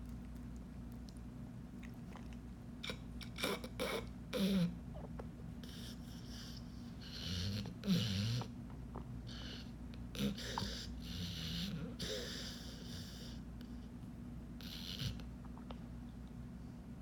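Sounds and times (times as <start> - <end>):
steady low hum: 0.0 - 17.0
dog snoring and snorting: 2.8 - 5.0, 5.6 - 13.4, 14.6 - 15.3.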